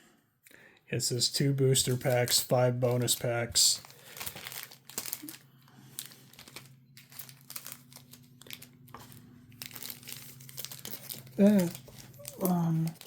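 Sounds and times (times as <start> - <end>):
foil packaging crinkling: 1.7 - 13.0.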